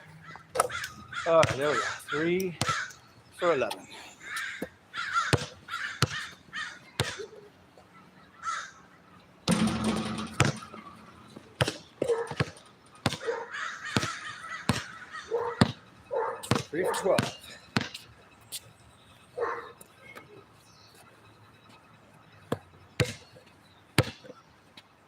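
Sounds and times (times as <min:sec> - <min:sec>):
bird giving harsh calls: 0:00.2 - 0:03.1, 0:04.2 - 0:07.4, 0:13.2 - 0:15.6
sharp knocks: 0:09.5 - 0:10.8.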